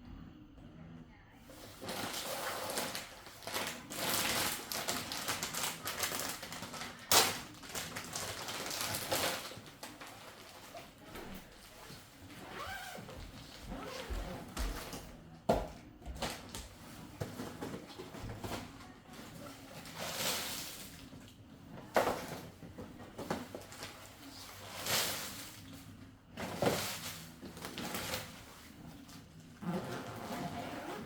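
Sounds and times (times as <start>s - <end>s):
bags rustling: 1.5s - 15.0s, 16.2s - 31.0s.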